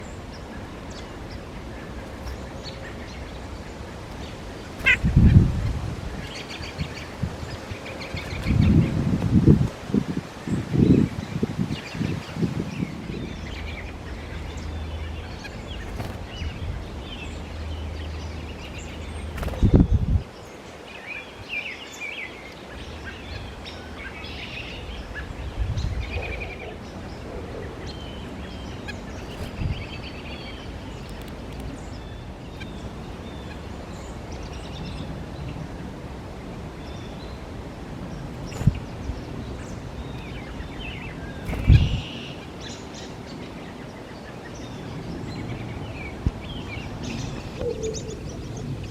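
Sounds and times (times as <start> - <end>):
bird calls: 0.0 - 9.4, 10.0 - 35.7, 38.1 - 48.9
outdoor background noise: 0.0 - 48.9.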